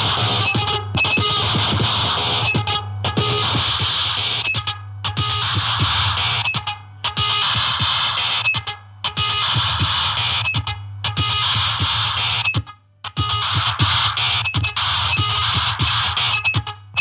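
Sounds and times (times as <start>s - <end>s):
distorted electronic noise music: 0.0s - 4.6s.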